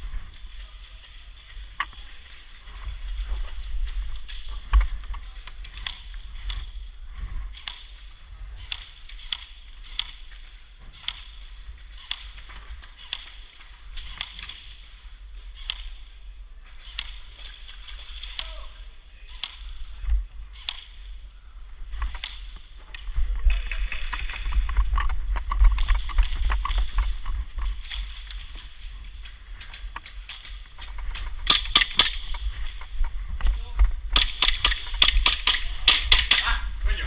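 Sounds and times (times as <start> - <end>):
steady low rumble: 0.0 - 37.0
sharp clicks and snaps: 7.5 - 14.9, 16.6 - 21.1, 21.9 - 32.9.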